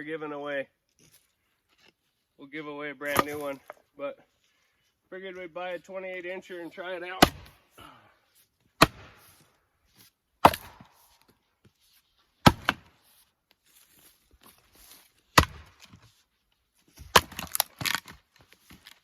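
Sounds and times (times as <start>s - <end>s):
axe splitting firewood: 3.0s - 3.9s, 7.2s - 8.0s, 8.6s - 11.4s, 12.4s - 13.2s, 13.8s - 16.2s, 16.8s - 19.0s.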